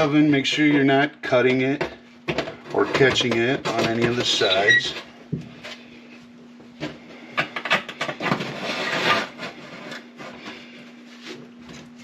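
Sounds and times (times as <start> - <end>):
steady low hum: 0.0 - 12.0
scraping and rubbing: 8.2 - 12.0.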